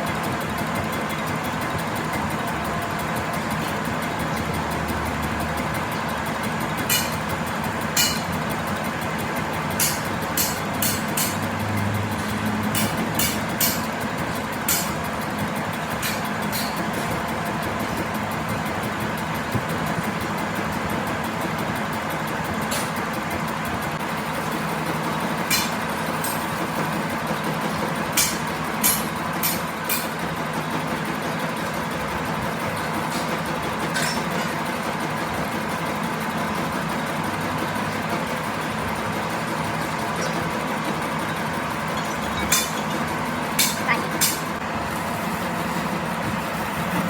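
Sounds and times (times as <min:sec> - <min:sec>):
workshop machine humming: 0:00.0 - 0:47.0.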